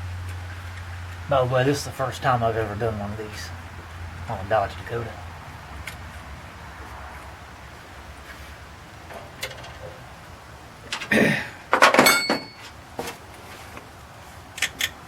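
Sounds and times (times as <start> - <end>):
metal tools clinking: 11.8 - 12.8.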